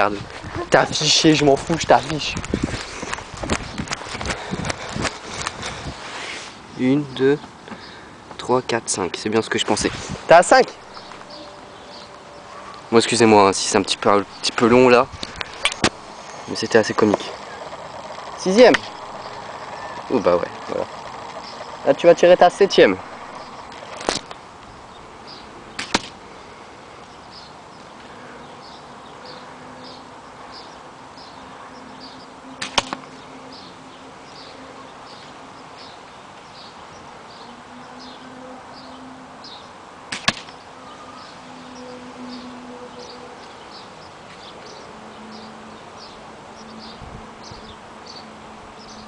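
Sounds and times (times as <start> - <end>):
faint high chirping: 10.8 - 25.5, 40.6 - 49.0
airsoft pistol shots: 40.1 - 40.6.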